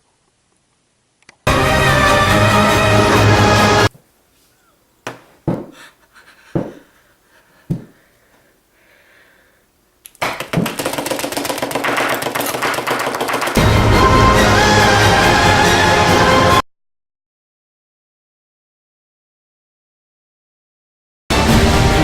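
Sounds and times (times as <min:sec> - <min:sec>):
knocks or thuds: 0:05.0 - 0:05.8, 0:06.5 - 0:06.8, 0:07.7 - 0:08.0.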